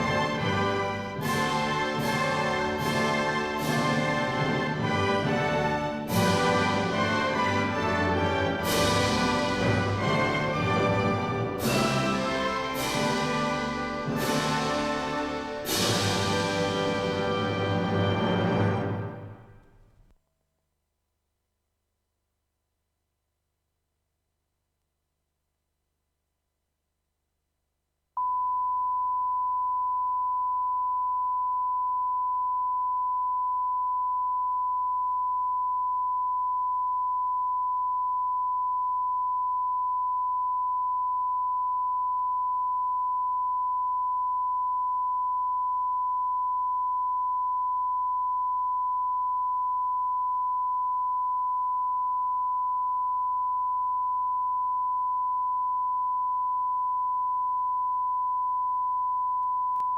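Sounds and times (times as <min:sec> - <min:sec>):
pure high tone whistle: 0:28.2 - 0:59.9.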